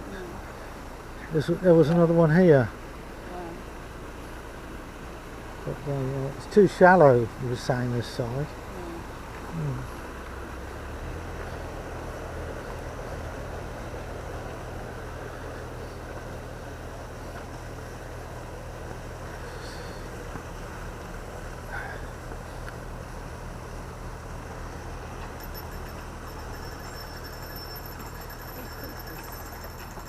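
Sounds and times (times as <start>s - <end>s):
diesel engine running: 0.0s - 30.0s.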